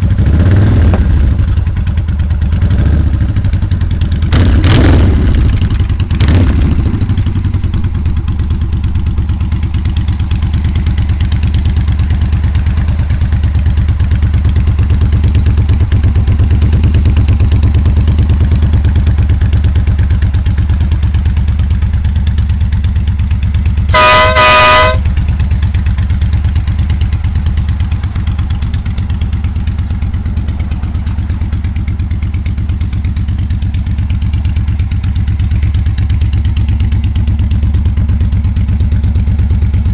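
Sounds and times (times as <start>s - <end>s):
motorcycle engine running: 0.0s - 39.9s
air horn blasts: 23.9s - 25.2s.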